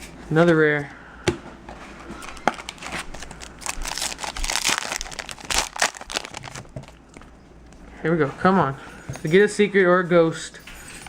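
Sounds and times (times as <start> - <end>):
foil wrapper crinkling and tearing: 2.2 - 7.2.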